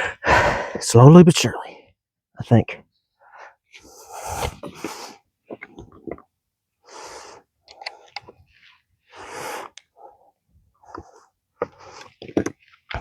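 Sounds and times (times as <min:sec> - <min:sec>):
breathy huffs: 0:00.0 - 0:00.8, 0:09.0 - 0:12.2.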